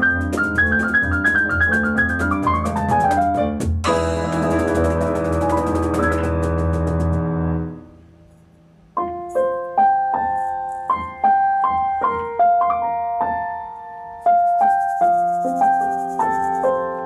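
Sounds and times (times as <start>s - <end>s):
piano melody: 0.0s - 17.0s.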